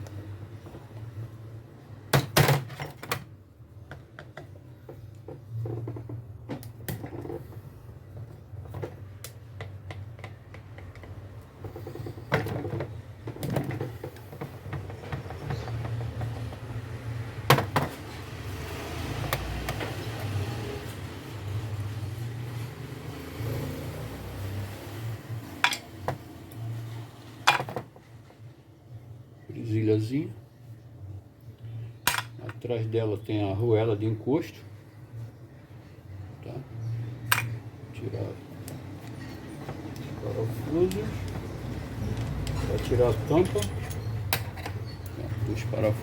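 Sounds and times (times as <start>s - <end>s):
metal tools clicking and knocking: 32.1s - 32.6s, 37.3s - 37.6s, 38.7s - 45.5s.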